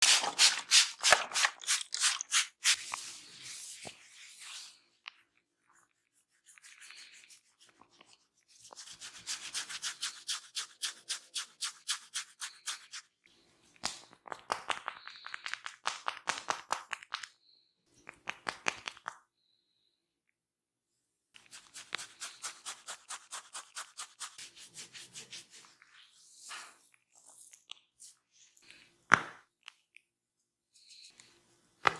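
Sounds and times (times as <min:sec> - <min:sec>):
fingers scratching through hair: 0:21.4 - 0:25.8.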